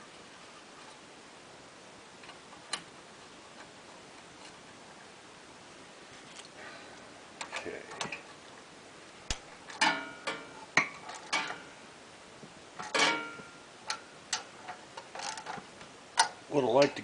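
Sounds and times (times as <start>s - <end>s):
metal tools and parts clinking: 11.1s - 11.7s, 12.8s - 15.6s
loud metal clanks: 12.8s - 13.5s.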